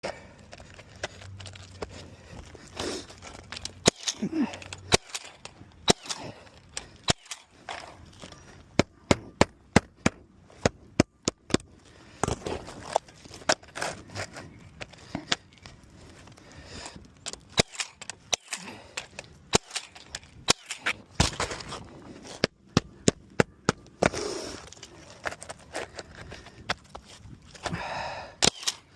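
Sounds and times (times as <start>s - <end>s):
scraping: 11.8s - 27.8s.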